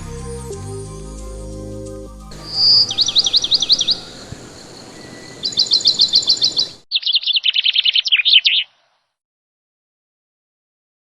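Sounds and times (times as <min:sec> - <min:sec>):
songbirds chirping and trilling: 0:02.3 - 0:09.0.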